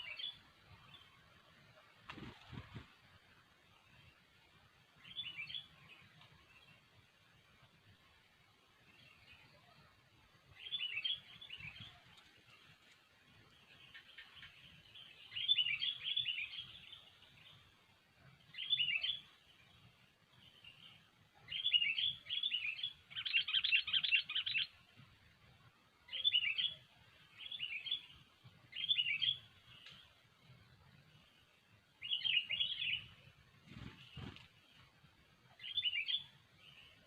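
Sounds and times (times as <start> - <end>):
bulbul singing: 20.4 - 24.8, 26.1 - 30.5, 32.0 - 34.4, 35.5 - 37.0.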